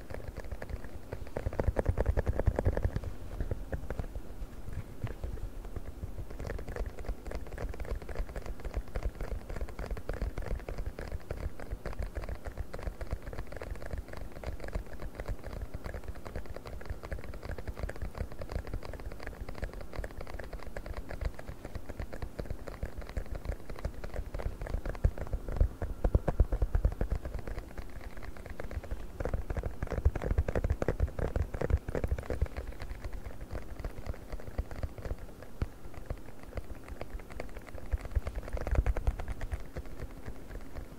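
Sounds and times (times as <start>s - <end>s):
fingers tapping on silicone: 0.0s - 4.1s, 4.7s - 40.9s.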